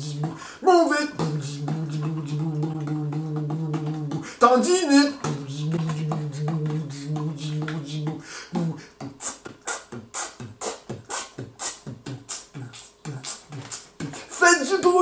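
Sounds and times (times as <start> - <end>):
hummed low note: 0.0 - 0.4, 1.1 - 4.3, 5.2 - 8.8
beatboxing kick and snare: 0.0 - 0.5, 1.1 - 4.3, 5.2 - 14.9.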